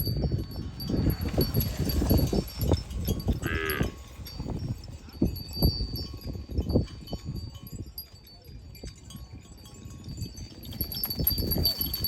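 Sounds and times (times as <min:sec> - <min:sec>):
cattle bells clanking: 0:00.0 - 0:12.0
cow calling: 0:03.4 - 0:04.0.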